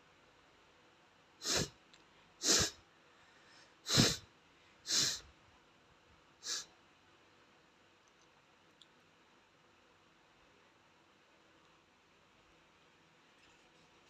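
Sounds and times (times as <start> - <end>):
boy sneezing: 1.4 - 1.7, 2.4 - 2.8, 3.9 - 4.2, 4.9 - 5.2.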